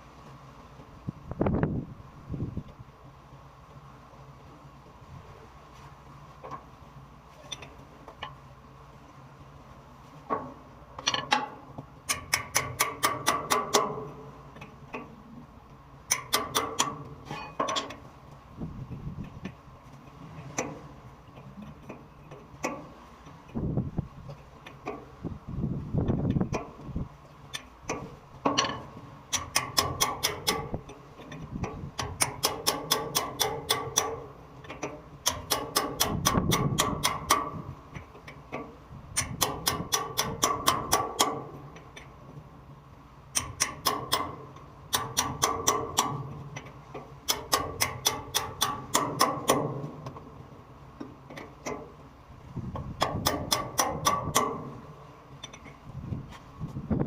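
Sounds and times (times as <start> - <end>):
rapid metallic clicking: 32.0 - 34.2, 35.2 - 37.6, 39.1 - 41.4, 53.0 - 54.7.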